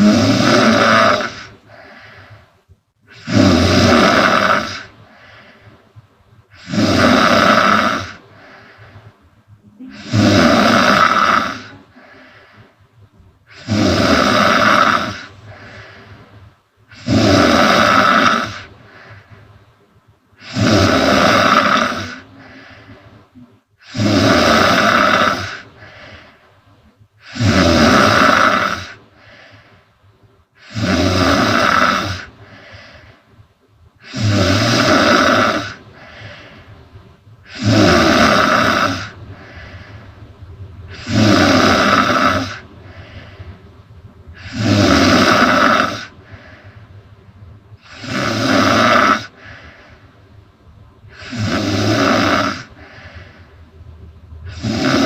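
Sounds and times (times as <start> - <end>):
woman snoring loudly: 0.0 - 2.0, 3.1 - 5.0, 6.5 - 8.4, 9.7 - 12.4, 13.5 - 15.8, 16.9 - 18.7, 20.4 - 22.6, 23.8 - 25.7, 27.2 - 29.0, 30.6 - 32.4, 34.0 - 36.4, 37.5 - 39.5, 40.9 - 42.7, 44.4 - 46.2, 47.8 - 49.5, 51.1 - 53.2, 54.5 - 55.0
soft breathing: 0.0 - 3.3, 3.9 - 17.1, 17.8 - 27.5, 28.2 - 30.9, 31.6 - 55.0.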